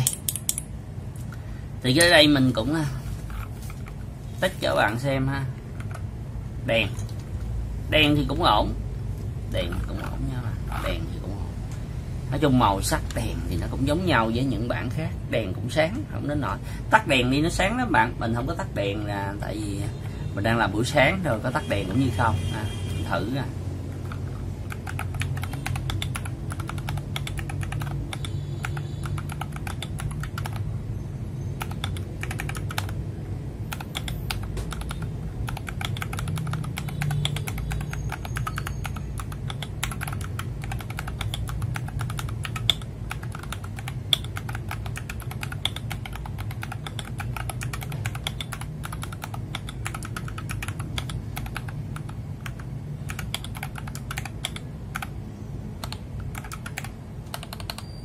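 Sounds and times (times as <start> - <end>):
mechanical keyboard typing: 0.0 - 0.7, 5.6 - 6.1, 9.6 - 11.0, 23.9 - 30.7, 31.6 - 33.0, 33.7 - 55.2, 55.8 - 57.9.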